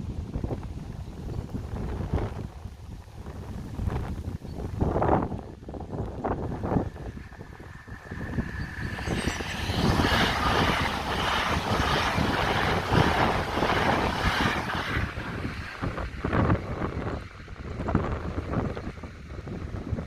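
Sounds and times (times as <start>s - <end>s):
train passing at speed: 5.2s - 20.0s.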